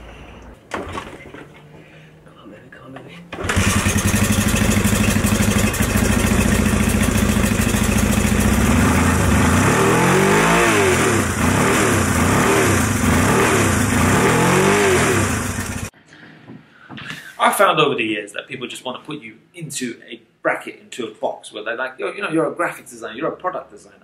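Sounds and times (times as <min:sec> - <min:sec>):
motorcycle engine idling and revving: 0:03.4 - 0:15.9.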